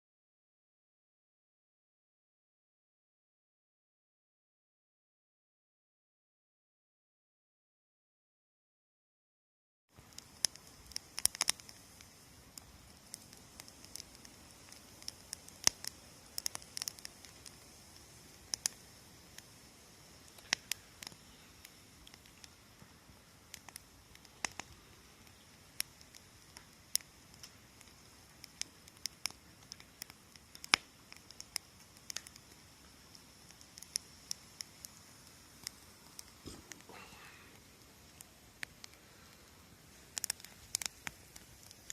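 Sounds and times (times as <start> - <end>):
wood fire crackling: 9.9 - 41.9.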